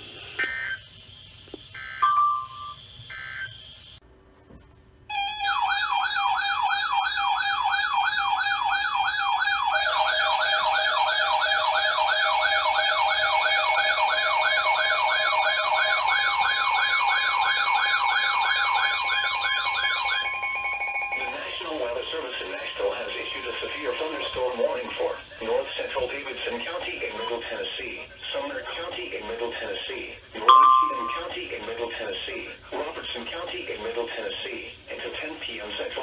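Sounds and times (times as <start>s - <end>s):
electronic warning siren warbling: 0.4s - 4.0s, 5.1s - 25.3s
warbling data bursts: 19.0s - 25.5s
higher warbling tone: 30.5s - 31.4s.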